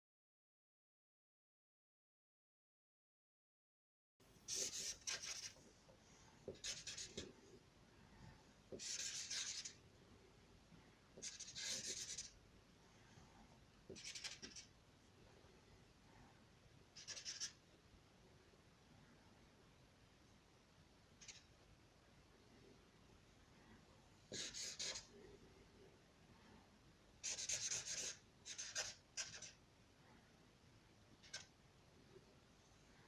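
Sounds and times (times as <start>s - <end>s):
drawing tool scratching paper: 4.5s - 5.6s, 6.5s - 7.3s, 8.7s - 9.8s, 11.2s - 12.3s, 13.9s - 14.7s, 17.0s - 17.6s, 24.3s - 25.1s, 27.2s - 29.6s.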